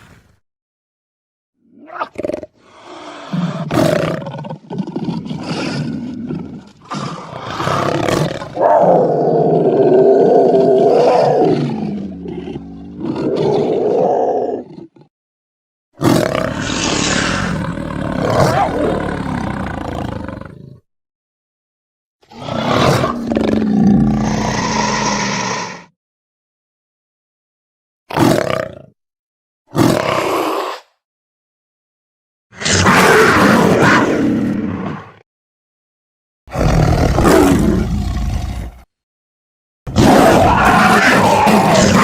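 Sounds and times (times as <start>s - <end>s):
big cat growling and snarling: 1.6s - 15.1s, 16.0s - 20.8s, 22.2s - 25.9s, 28.1s - 29.0s, 29.7s - 31.0s, 32.6s - 35.2s, 36.5s - 38.9s, 39.9s - 42.0s
big cat roar: 3.2s - 15.1s, 16.0s - 20.8s, 22.3s - 25.9s, 28.1s - 29.0s, 29.7s - 30.9s, 32.6s - 35.2s, 36.5s - 38.9s, 39.9s - 42.0s.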